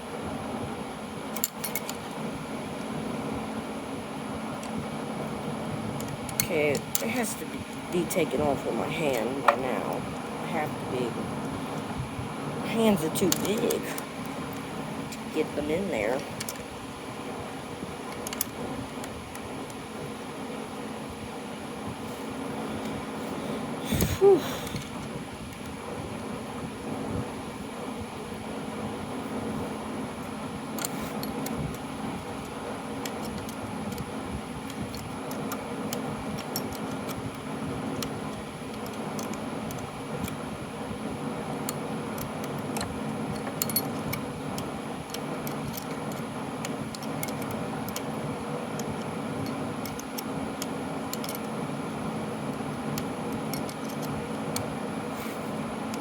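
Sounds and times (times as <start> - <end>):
machine hum: 0.0 - 56.0
metallic clicks of tools: 42.2 - 44.2.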